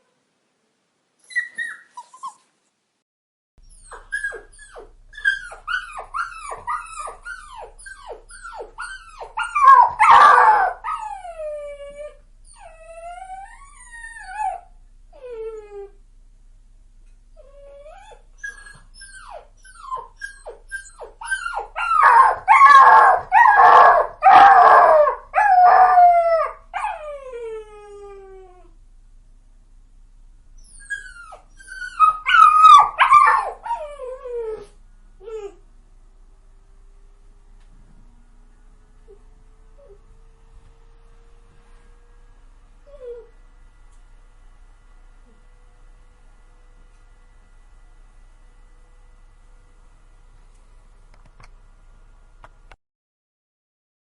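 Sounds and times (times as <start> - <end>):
puppy whimpering and yelping: 1.2 - 2.5, 3.6 - 15.9, 17.4 - 28.7, 30.6 - 35.6.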